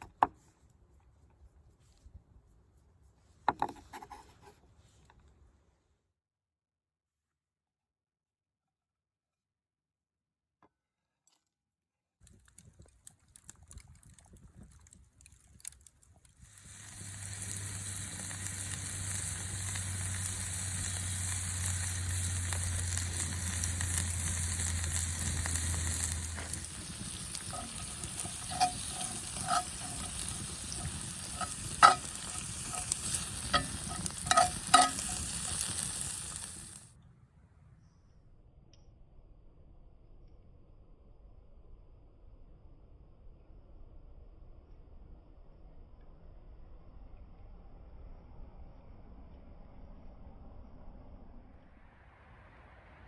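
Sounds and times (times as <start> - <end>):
food sizzling in a pan: 16.4 - 36.9
utensil clinking on pan: 25.2 - 35.8.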